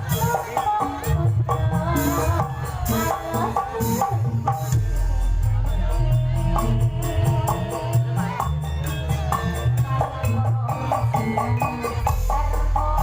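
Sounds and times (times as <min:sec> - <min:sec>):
drums and percussion strikes: 0:00.0 - 0:13.0
melody of held repeating notes: 0:00.0 - 0:13.0
deep bass: 0:04.4 - 0:13.0.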